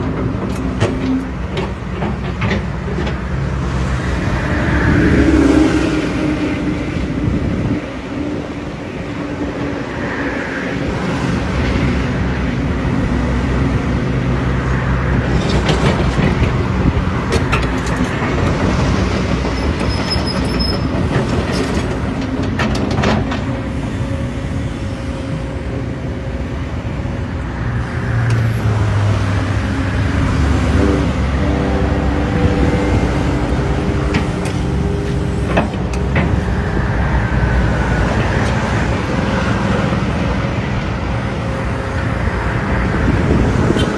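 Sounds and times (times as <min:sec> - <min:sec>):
digger diesel engine revving: 0:27.8 - 0:43.9.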